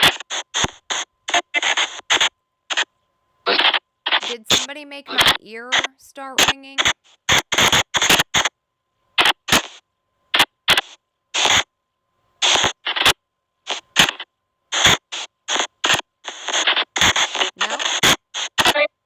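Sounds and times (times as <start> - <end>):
bursts of hiss and garbled radio noise: 0.0 - 2.9, 3.5 - 8.5, 9.2 - 9.8, 10.4 - 11.7, 12.4 - 18.9.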